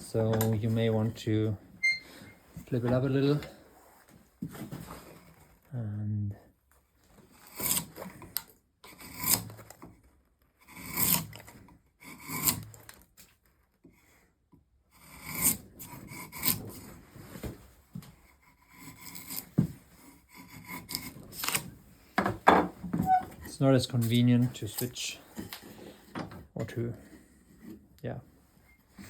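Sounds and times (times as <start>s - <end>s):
drawknife shaving wood: 7.1s - 14.3s, 14.9s - 21.8s.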